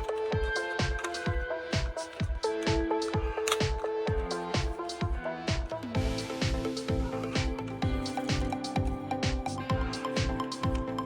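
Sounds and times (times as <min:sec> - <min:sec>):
electronic dance music: 0:00.0 - 0:11.0.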